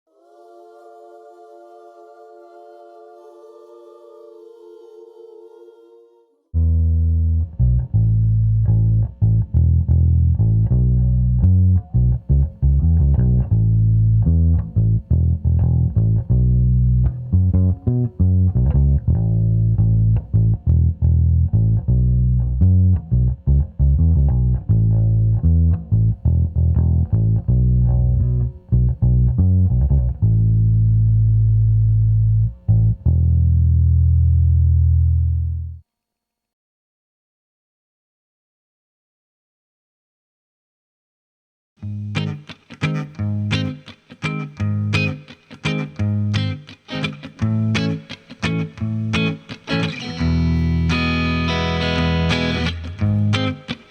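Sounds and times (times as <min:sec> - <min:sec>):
bass guitar plucked notes: 0:06.6 - 0:35.8, 0:41.8 - 0:43.8, 0:44.4 - 0:53.9.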